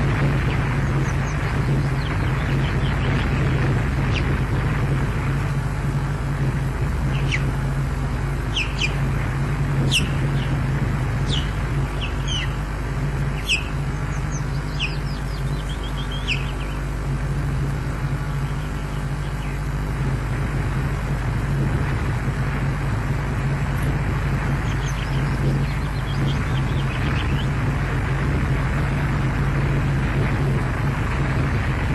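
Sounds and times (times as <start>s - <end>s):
low hum and hiss: 0.0s - 31.9s
high bird chirps: 7.1s - 7.6s, 8.5s - 9.1s, 9.8s - 10.6s, 11.2s - 16.9s.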